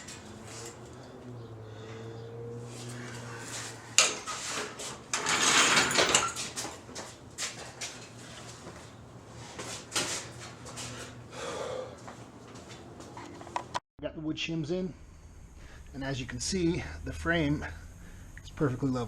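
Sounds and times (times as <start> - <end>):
steady low hum: 6.5 - 19.0.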